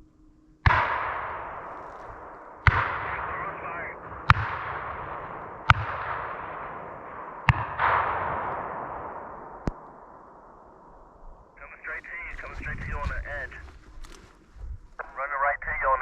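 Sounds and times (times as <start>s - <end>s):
shotgun blasts echoing: 0.6s - 11.2s.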